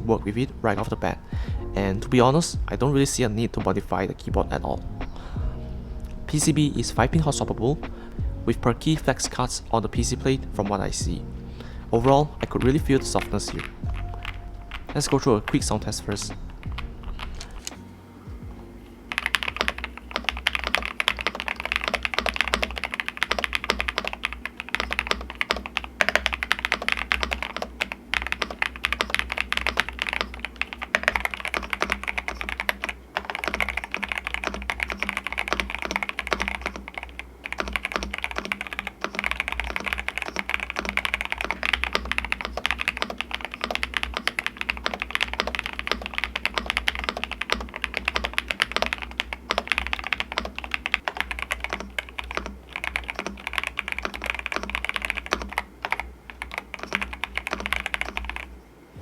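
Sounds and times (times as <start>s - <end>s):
fast typing on mechanical keyboard: 12.0s - 17.7s, 19.1s - 58.5s.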